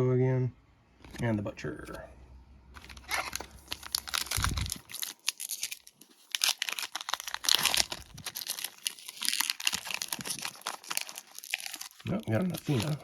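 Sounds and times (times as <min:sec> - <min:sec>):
wrapper tearing and crinkling: 0:02.8 - 0:13.0.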